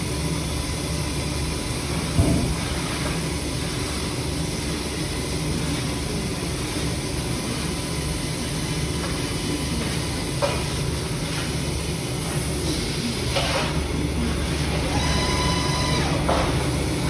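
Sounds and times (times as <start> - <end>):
workshop machinery rumble with hiss: 0.0 - 17.0.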